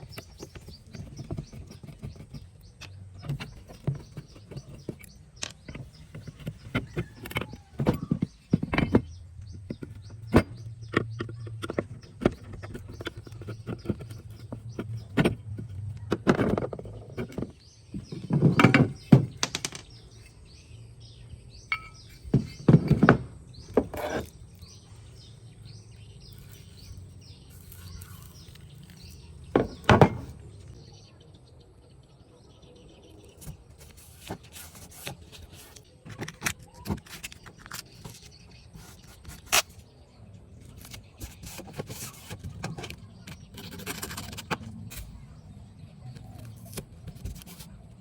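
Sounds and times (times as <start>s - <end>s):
irregular knocks and clunks: 0.1s - 20.2s, 21.7s - 24.2s, 29.5s - 30.5s.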